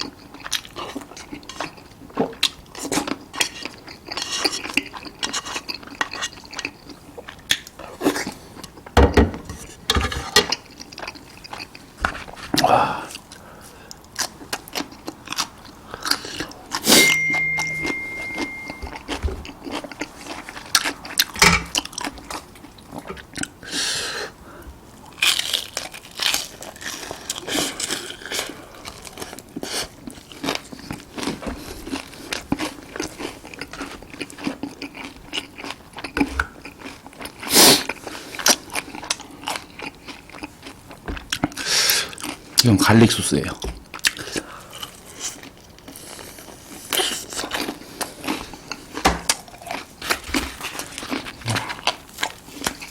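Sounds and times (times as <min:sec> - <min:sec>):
crunching and chewing fried chicken: 0:00.0 - 0:09.0, 0:10.5 - 0:16.9, 0:18.6 - 0:52.9.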